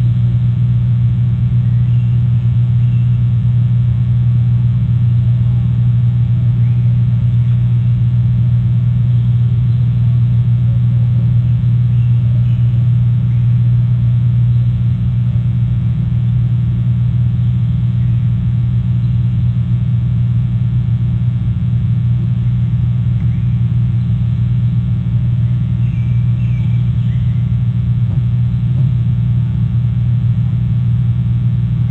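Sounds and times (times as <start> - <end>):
low electrical hum: 0.0 - 31.9
faint high chirps: 1.6 - 3.4, 6.4 - 8.0, 11.4 - 14.9, 23.1 - 28.2.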